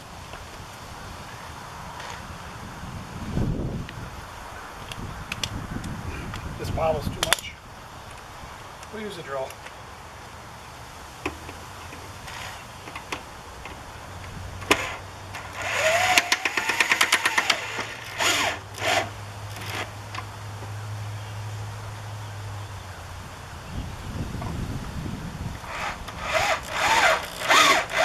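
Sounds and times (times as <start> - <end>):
power drill driving screws: 12.2 - 13.3, 14.6 - 20.2, 25.6 - 28.0
rapid ticking: 12.2 - 20.7, 21.3 - 28.0.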